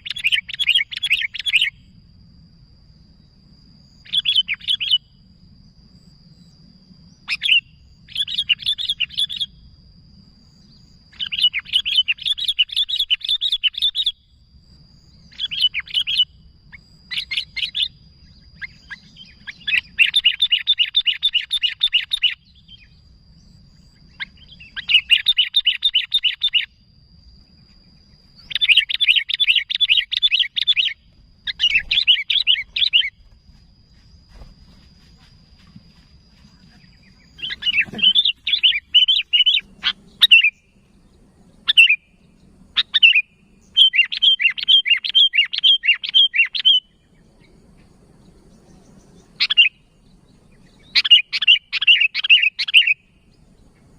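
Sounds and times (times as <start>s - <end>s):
bulbul chattering: 28.2s - 33.4s, 36.6s - 46.8s.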